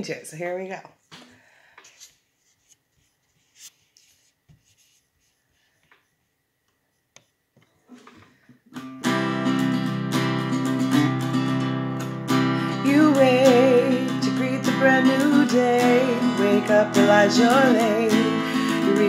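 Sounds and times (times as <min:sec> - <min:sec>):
guitar playing chords: 0:08.8 - 0:19.0.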